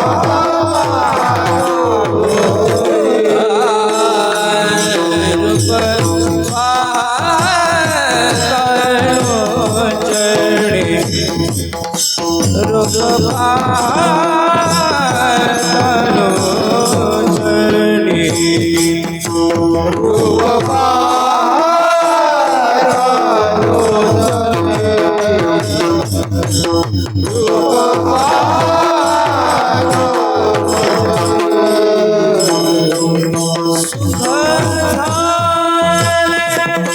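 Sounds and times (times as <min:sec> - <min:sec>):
devotional singing: 0:00.0 - 0:36.9
hand drum playing: 0:12.5 - 0:18.6, 0:23.7 - 0:32.4.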